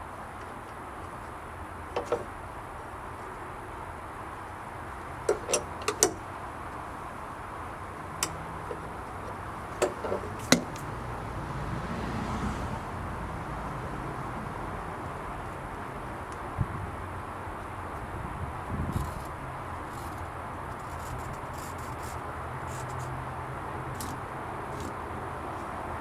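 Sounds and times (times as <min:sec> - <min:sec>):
metal latch clicks and knocks: 0:02.0 - 0:02.3, 0:05.3 - 0:06.2, 0:08.2 - 0:10.9.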